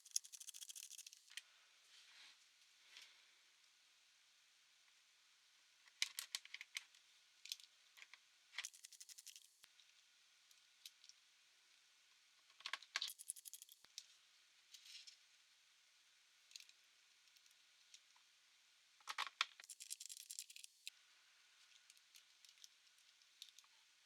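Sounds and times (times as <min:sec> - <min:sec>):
rapid ratchet-like ticking: 0:00.0 - 0:01.3, 0:08.6 - 0:09.6, 0:13.1 - 0:13.8, 0:19.6 - 0:20.9
clicks and rattles of laptop parts: 0:05.9 - 0:06.9, 0:19.0 - 0:20.7.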